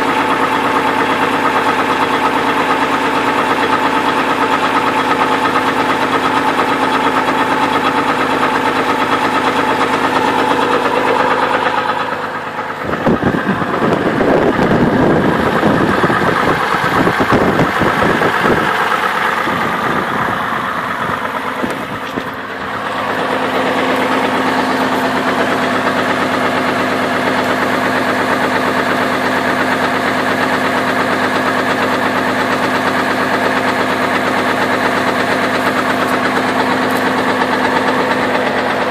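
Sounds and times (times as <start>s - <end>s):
engine running with knock: 0.0s - 38.9s.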